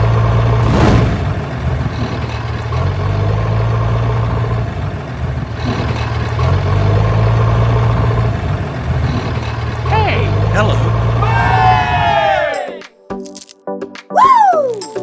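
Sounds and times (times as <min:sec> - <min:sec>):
tractor engine idling: 0:00.0 - 0:12.0.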